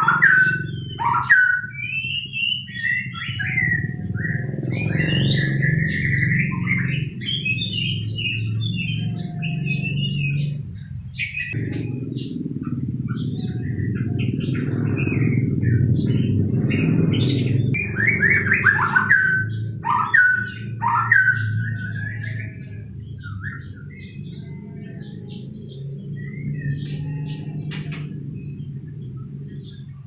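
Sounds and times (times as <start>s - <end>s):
bird singing whistled phrases: 0.0s - 10.4s
steady low hum: 0.0s - 30.0s.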